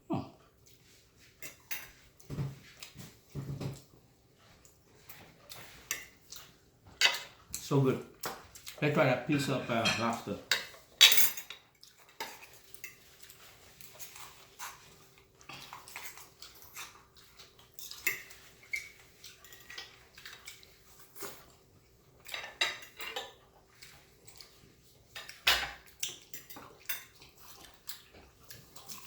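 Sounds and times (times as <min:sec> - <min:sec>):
cutlery clinking on a plate: 0:09.7 - 0:13.1, 0:22.2 - 0:23.4, 0:25.2 - 0:27.2.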